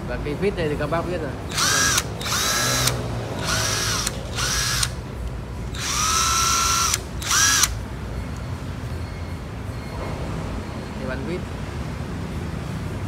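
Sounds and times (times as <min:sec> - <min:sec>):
cordless drill motor whirring: 0:01.5 - 0:05.0, 0:05.7 - 0:07.8.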